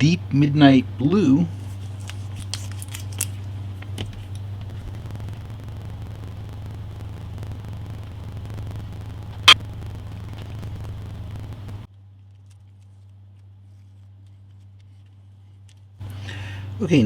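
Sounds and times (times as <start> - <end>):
low hum: 0.0 - 11.9
steady noise: 0.0 - 11.9, 16.0 - 17.0.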